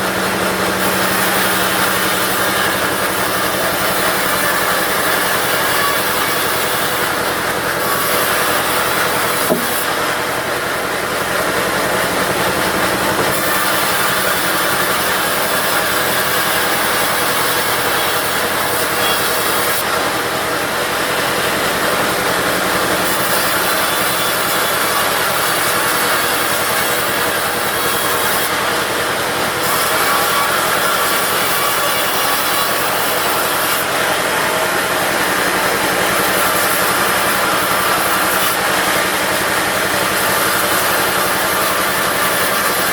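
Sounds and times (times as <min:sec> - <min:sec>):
diesel engine running: 0:00.0 - 0:14.8, 0:15.4 - 0:23.1, 0:33.0 - 0:42.4
bandsaw blade rasping: 0:00.0 - 0:42.9.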